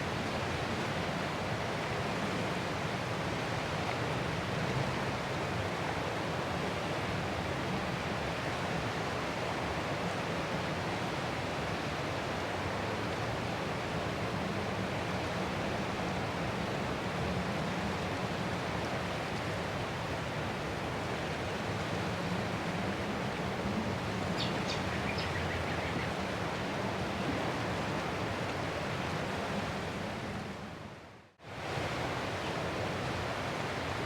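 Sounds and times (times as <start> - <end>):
ocean waves on shore: 11.3 - 34.0.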